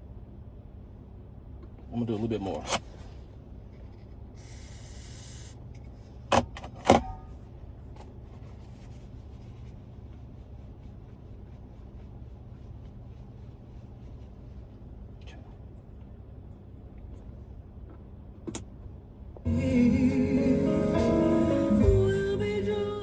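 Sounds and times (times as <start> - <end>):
steady low hum: 0.0 - 23.0
spray can hissing: 4.4 - 5.6.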